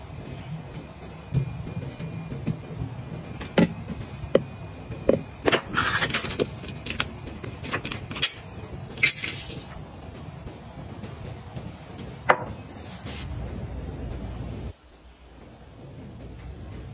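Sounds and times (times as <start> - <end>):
rustling or scraping: 12.7 - 13.5.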